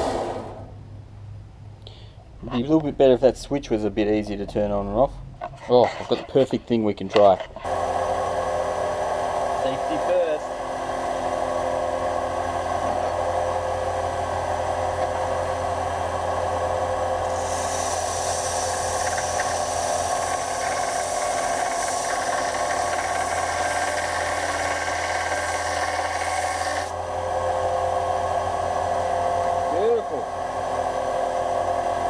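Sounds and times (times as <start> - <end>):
belt sander running: 0.0 - 0.8, 7.6 - 32.0.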